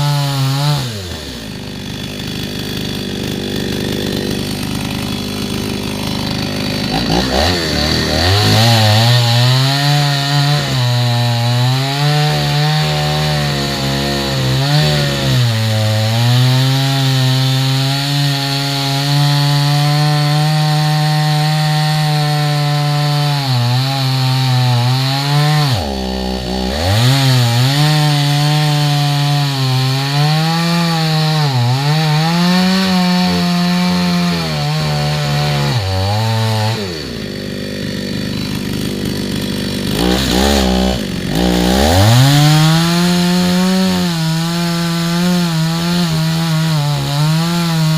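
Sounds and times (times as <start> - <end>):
chainsaw cutting wood: 0.0 - 47.9.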